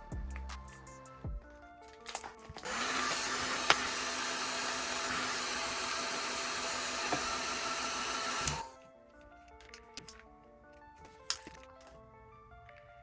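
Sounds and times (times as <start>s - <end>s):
heat gun blowing hiss: 2.6s - 8.8s.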